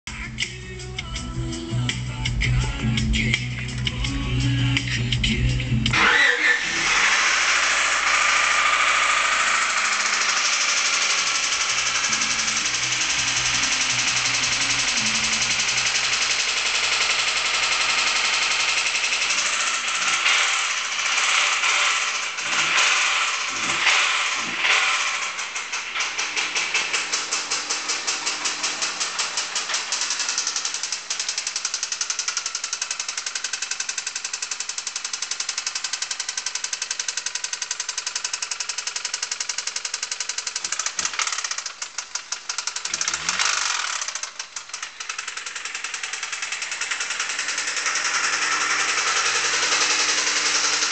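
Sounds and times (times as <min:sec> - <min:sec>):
engine revving: 0:03.9 - 0:50.9
car engine knocking: 0:07.0 - 0:50.9.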